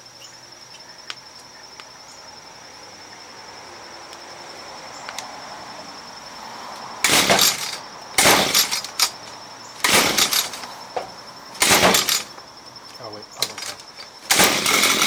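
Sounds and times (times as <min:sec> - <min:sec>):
crickets chirping: 0:00.0 - 0:15.0
recoil starter pulls: 0:07.0 - 0:09.2, 0:09.8 - 0:10.7, 0:11.6 - 0:12.3, 0:13.4 - 0:15.0.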